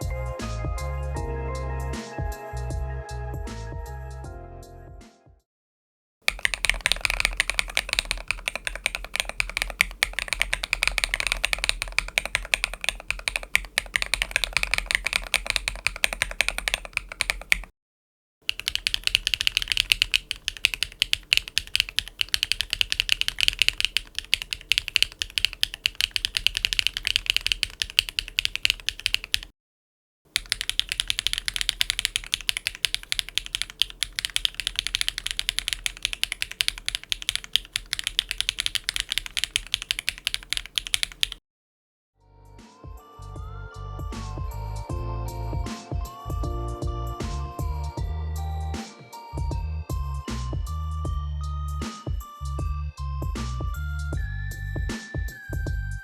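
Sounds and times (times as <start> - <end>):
mechanical keyboard typing: 6.3 - 17.7, 18.5 - 29.5, 30.3 - 41.4.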